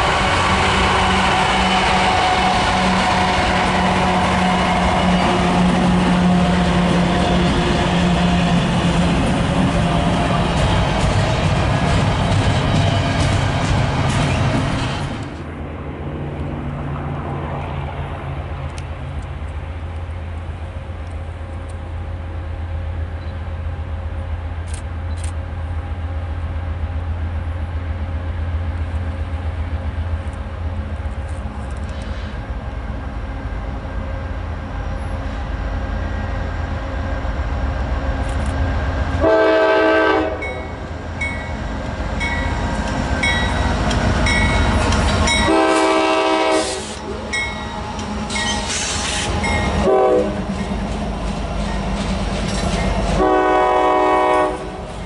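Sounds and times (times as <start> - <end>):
locomotive air horn blasts: 0.0 - 6.8, 39.2 - 40.7, 45.3 - 47.1, 49.8 - 50.5, 53.2 - 54.8
diesel locomotive rumbling: 0.0 - 55.0.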